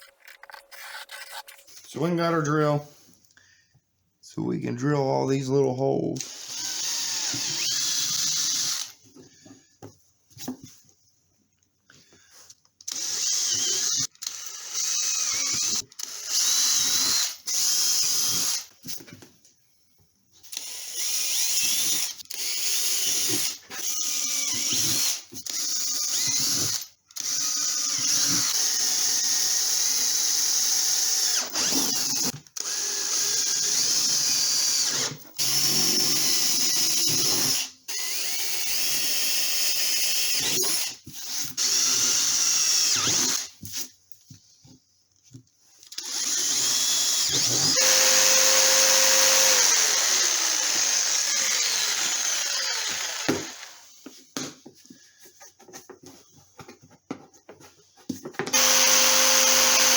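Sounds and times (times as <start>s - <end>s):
power drill drilling: 6.2s - 9.0s, 12.9s - 18.7s, 20.5s - 43.6s, 45.9s - 54.0s, 58.5s - 59.9s.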